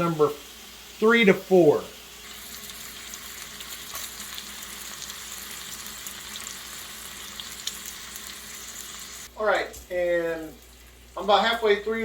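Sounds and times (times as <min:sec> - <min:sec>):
bacon sizzling in a skillet: 0:00.0 - 0:12.0.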